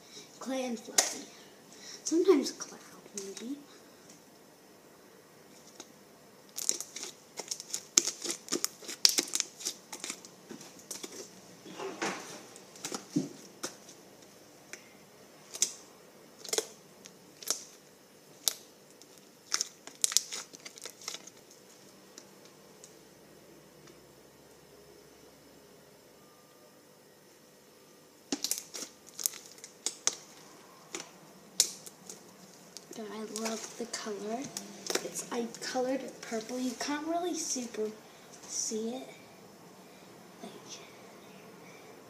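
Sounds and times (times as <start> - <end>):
slime crackling and popping: 6.5 - 11.2, 16.4 - 17.8, 18.4 - 21.7, 28.3 - 37.8.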